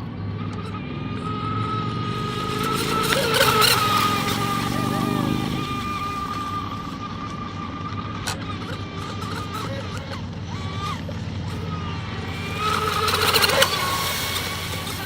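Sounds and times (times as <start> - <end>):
rc boat motor whine: 0.0 - 15.0
hissing water spray: 2.2 - 6.9, 12.2 - 15.0.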